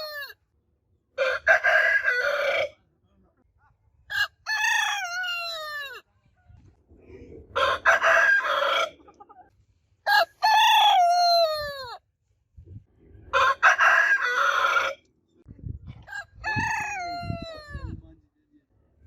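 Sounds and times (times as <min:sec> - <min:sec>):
roosters crowing: 0:00.0 - 0:00.4, 0:01.2 - 0:02.8, 0:04.1 - 0:06.1, 0:07.5 - 0:09.0, 0:10.0 - 0:12.0, 0:13.3 - 0:15.0, 0:16.0 - 0:17.9.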